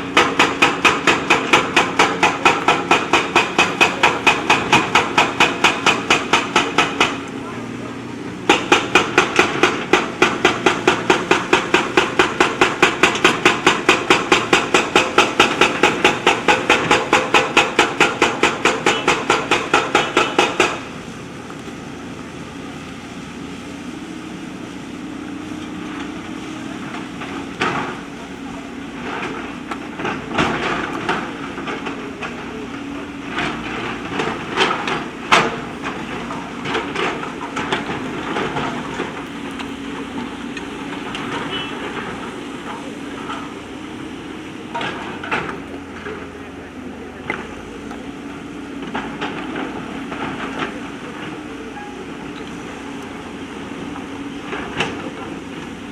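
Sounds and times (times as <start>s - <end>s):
scattered knocks: 0.0s - 7.2s, 8.4s - 21.0s, 29.0s - 43.6s
rapid even hammering: 0.1s - 7.2s, 8.5s - 21.0s.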